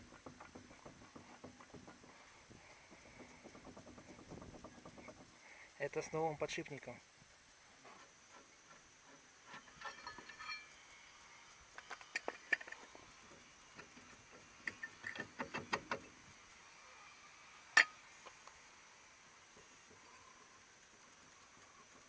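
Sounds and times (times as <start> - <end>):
metal tools clicking and clinking: 9.5 - 10.8.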